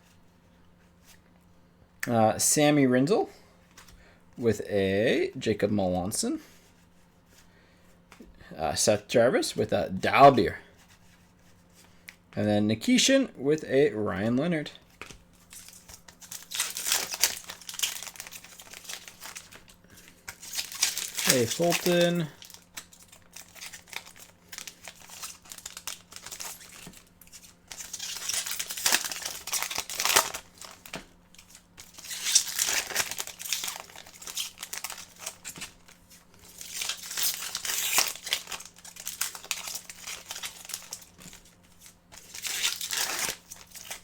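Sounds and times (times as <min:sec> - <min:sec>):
wrappers tearing and crinkling: 0:15.4 - 0:44.0.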